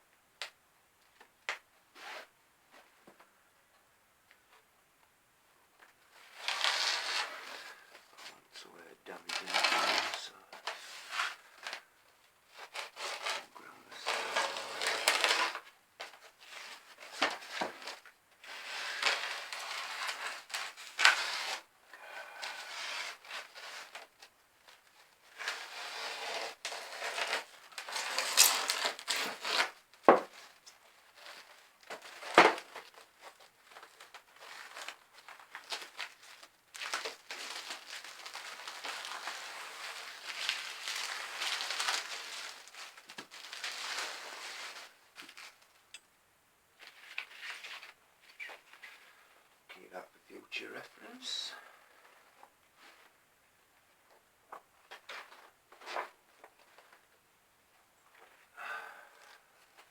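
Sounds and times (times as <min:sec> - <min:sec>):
cardboard scraping and crinkling: 0:06.1 - 0:08.3, 0:09.1 - 0:11.9, 0:12.5 - 0:21.7, 0:22.4 - 0:45.7, 0:54.5 - 0:57.1.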